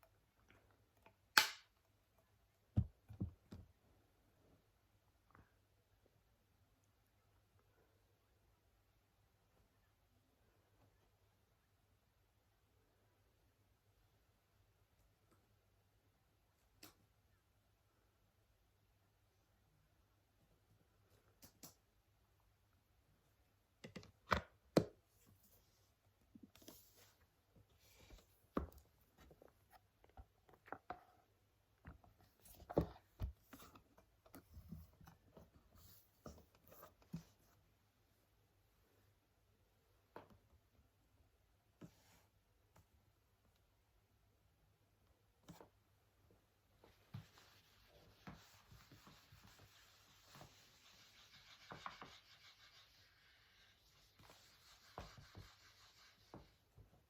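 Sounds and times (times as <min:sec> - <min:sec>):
pen scratching on smooth surface: 0:46.9 - 0:56.8.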